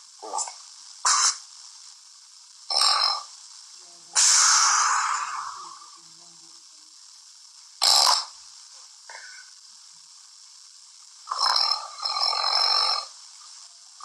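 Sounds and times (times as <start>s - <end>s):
man snoring: 2.7s - 3.3s, 7.8s - 8.3s, 11.3s - 13.1s.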